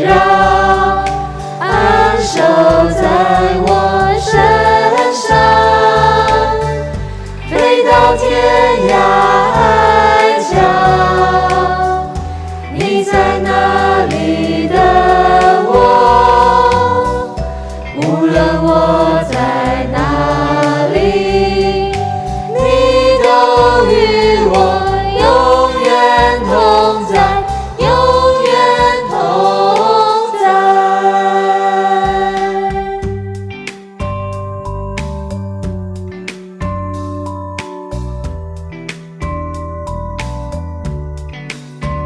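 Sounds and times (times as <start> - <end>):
choir singing: 0.0 - 33.2
instrumental accompaniment: 0.0 - 42.0.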